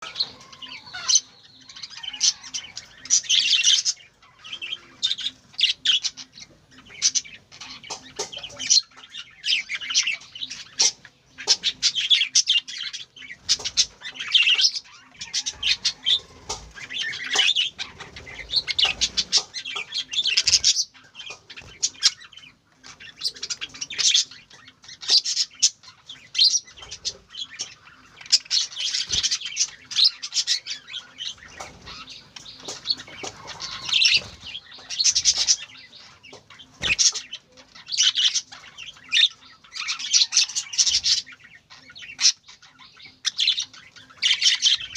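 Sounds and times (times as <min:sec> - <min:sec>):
birds chirping: 0:00.0 - 0:44.9.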